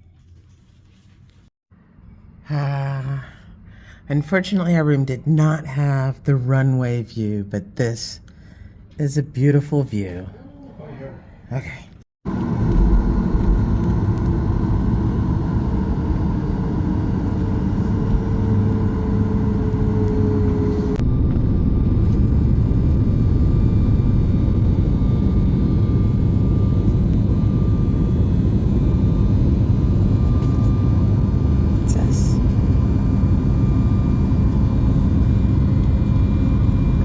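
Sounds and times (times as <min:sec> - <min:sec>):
low mechanical rumble: 0:12.3 - 0:37.0.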